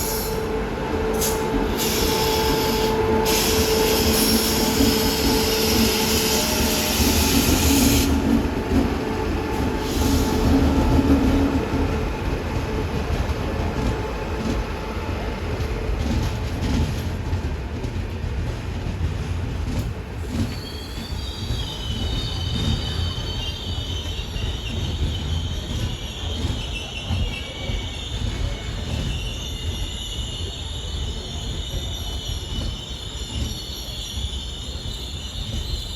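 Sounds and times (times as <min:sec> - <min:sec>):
wheels squealing against rails: 0:00.0 - 0:12.0, 0:20.2 - 0:35.9
train rumbling along rails: 0:00.0 - 0:35.9.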